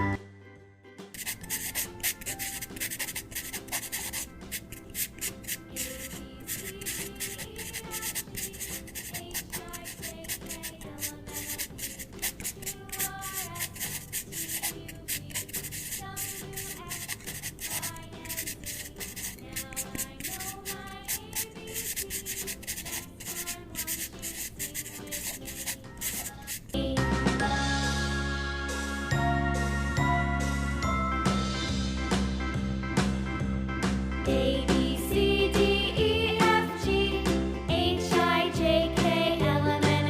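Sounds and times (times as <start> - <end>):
soft background music: 0.0 - 40.0
drawing tool rubbing on paper: 1.2 - 26.8.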